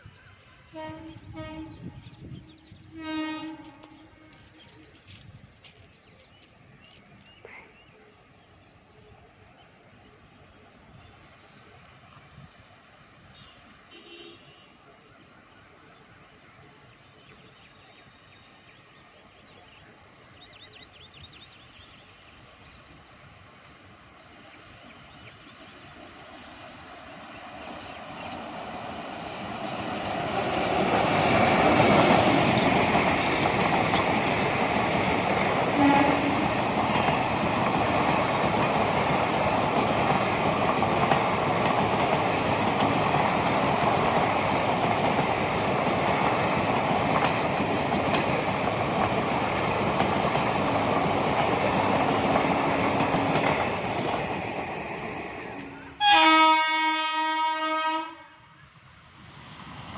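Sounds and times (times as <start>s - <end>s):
train horn blast: 0.7s - 2.0s, 2.9s - 4.6s, 13.3s - 14.8s, 35.7s - 36.6s, 56.0s - 58.6s
train wheels rushing on rails: 21.0s - 57.8s, 58.8s - 59.9s.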